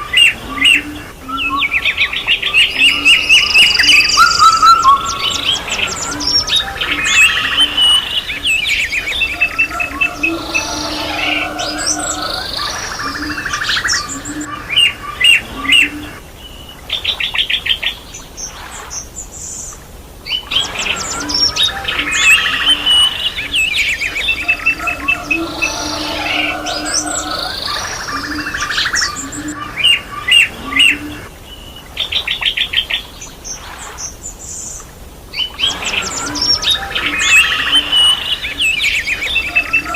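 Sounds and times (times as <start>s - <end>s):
low cooing call: 0.0s - 16.3s, 20.5s - 31.4s
birds singing and chirping: 0.0s - 19.7s, 20.3s - 39.9s.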